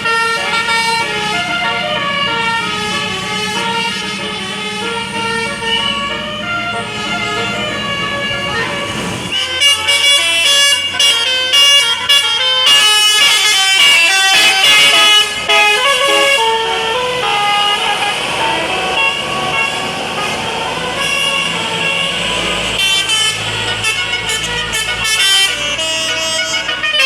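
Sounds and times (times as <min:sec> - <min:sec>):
musical air horn playing tune: 0:00.0 - 0:27.0.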